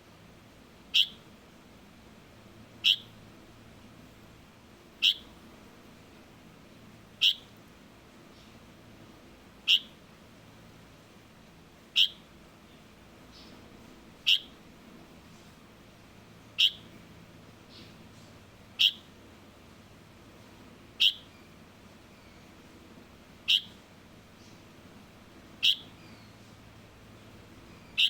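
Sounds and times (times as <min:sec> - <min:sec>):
bird chirps: 0:00.9 - 0:01.2, 0:02.8 - 0:03.2, 0:05.0 - 0:05.3, 0:07.2 - 0:07.5, 0:09.7 - 0:10.0, 0:12.0 - 0:12.3, 0:14.2 - 0:14.6, 0:16.6 - 0:16.9, 0:18.8 - 0:19.1, 0:21.0 - 0:22.5, 0:23.5 - 0:23.8, 0:25.6 - 0:26.5, 0:27.7 - 0:28.0.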